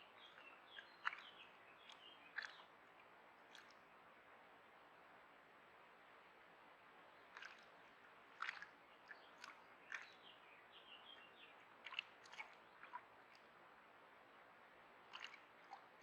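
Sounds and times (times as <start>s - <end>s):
sharp clicks and splashy taps: 0.8s - 3.8s, 7.3s - 7.7s, 8.4s - 10.2s, 11.8s - 13.5s, 15.1s - 15.8s.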